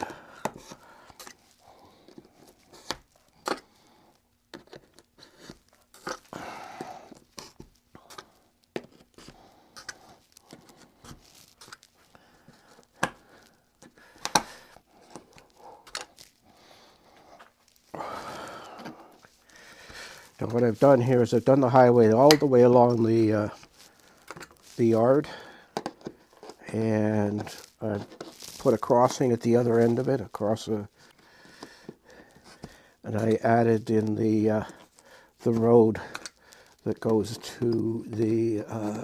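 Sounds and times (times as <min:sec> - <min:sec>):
small rustles: 0:07.0 - 0:18.0, 0:18.9 - 0:39.0.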